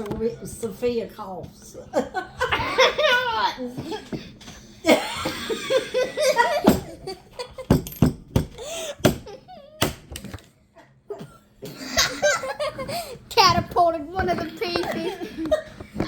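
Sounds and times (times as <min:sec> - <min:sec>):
girl laughing: 0:01.9 - 0:04.2, 0:04.8 - 0:07.8, 0:08.6 - 0:09.8, 0:11.1 - 0:13.2, 0:14.7 - 0:16.0.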